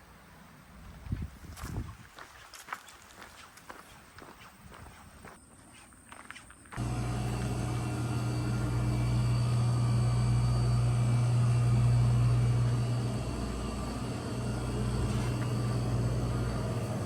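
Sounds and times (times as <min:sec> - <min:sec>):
low mechanical hum: 0:06.7 - 0:17.0.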